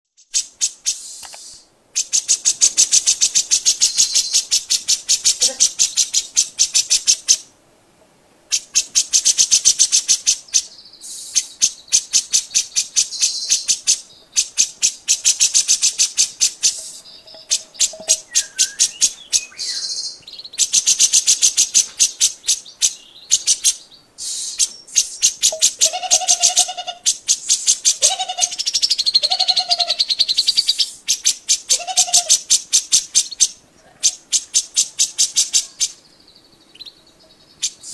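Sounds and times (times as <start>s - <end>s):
bulbul chattering song: 0.2s - 7.5s, 8.5s - 37.9s
low whistled bird notes: 10.6s - 25.9s.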